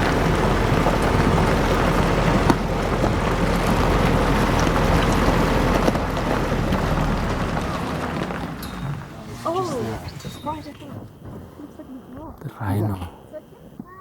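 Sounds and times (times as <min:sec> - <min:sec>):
vehicle engine running: 0:00.0 - 0:12.2
wind on microphone: 0:09.0 - 0:12.5.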